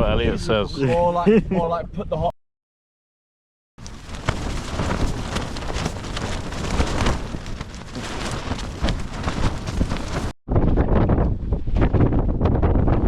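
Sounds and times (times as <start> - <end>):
strong gusting wind: 3.8 - 13.0
tent fabric flapping and snapping: 3.8 - 13.0.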